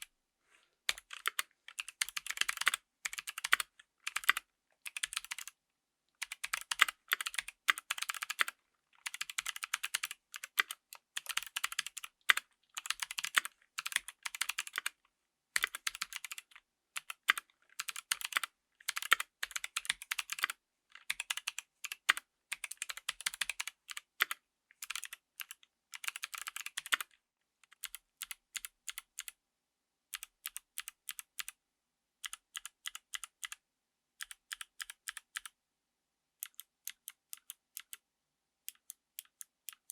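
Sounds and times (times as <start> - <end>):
mechanical keyboard typing clicks: 0.9 - 5.5, 6.2 - 14.9, 15.6 - 29.3, 30.2 - 31.5, 32.2 - 33.6, 34.2 - 35.5, 36.4 - 38.0, 38.7 - 39.9.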